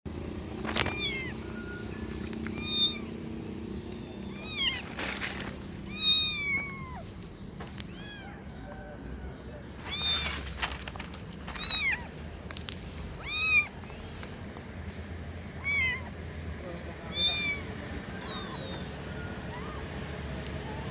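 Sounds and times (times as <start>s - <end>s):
kitten meowing: 0.8s - 3.2s, 3.8s - 7.1s, 7.8s - 8.9s, 9.8s - 10.5s, 11.5s - 12.1s, 13.2s - 13.8s, 15.5s - 16.2s, 17.1s - 20.9s.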